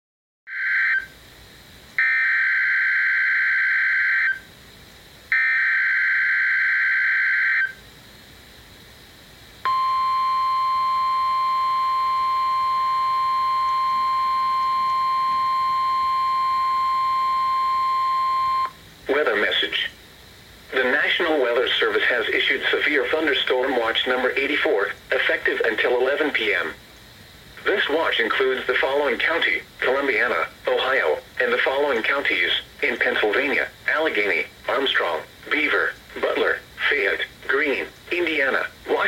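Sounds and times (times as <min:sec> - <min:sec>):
steady warning alarm tone: 0:00.5 - 0:01.2, 0:02.0 - 0:04.5, 0:05.3 - 0:07.9, 0:09.6 - 0:18.8.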